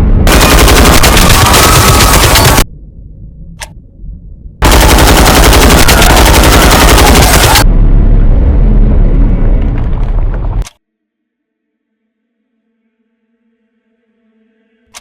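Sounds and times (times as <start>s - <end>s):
low rumble: 0.0s - 10.8s
machine-gun fire: 0.2s - 2.7s, 4.6s - 7.7s.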